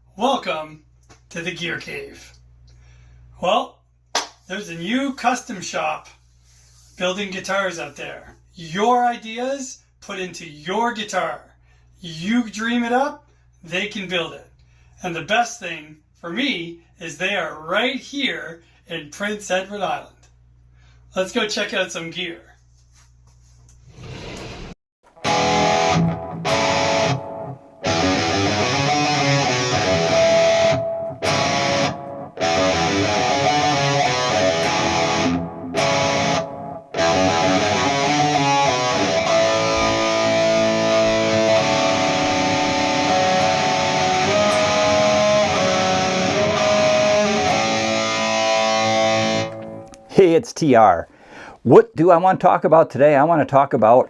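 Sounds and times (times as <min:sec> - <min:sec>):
electric guitar riff: 0:25.2 - 0:50.1.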